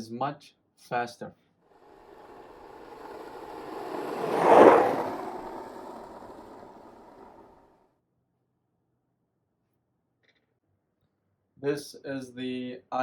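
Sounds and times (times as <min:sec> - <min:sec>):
whoosh rushing noise: 0:02.0 - 0:07.5.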